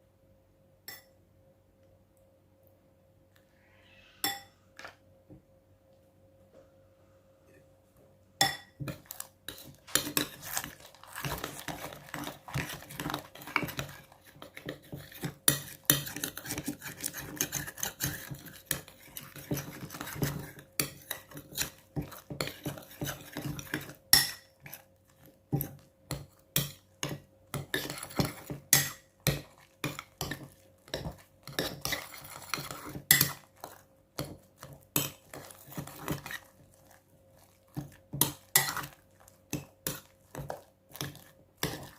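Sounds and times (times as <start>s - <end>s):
slime stirring and scraping: 8.4s - 41.9s.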